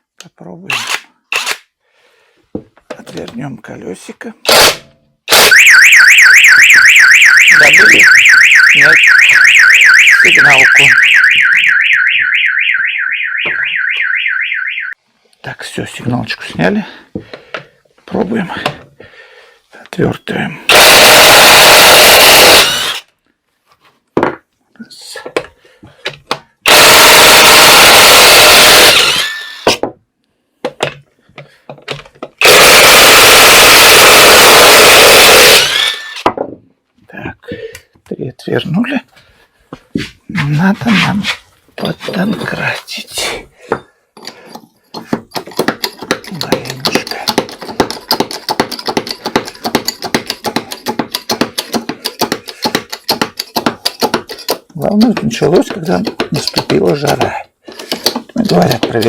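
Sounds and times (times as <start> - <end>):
electric power wrench whine: 20.7 - 23.1, 26.7 - 29.8, 32.4 - 36.3.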